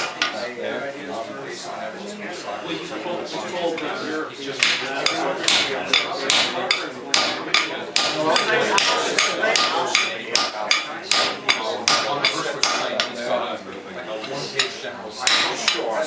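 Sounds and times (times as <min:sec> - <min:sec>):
hammer striking steel: 0:00.0 - 0:00.4, 0:04.6 - 0:13.1.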